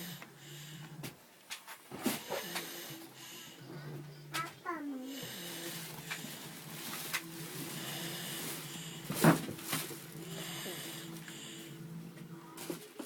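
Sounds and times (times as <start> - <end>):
person snoring: 4.7 - 6.6, 7.5 - 9.2, 10.1 - 12.0.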